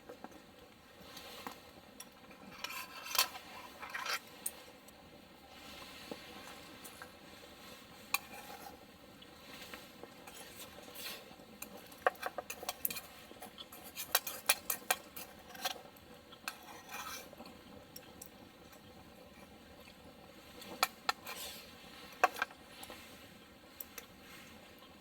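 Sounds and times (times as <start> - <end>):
metal cookware clinking and scraping: 2.4 - 4.3.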